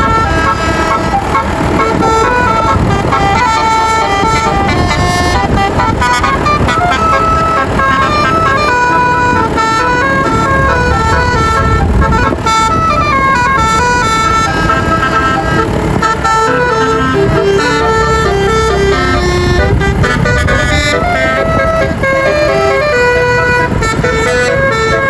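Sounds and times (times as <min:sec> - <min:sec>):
musical bus horn melody: 0:00.0 - 0:25.0.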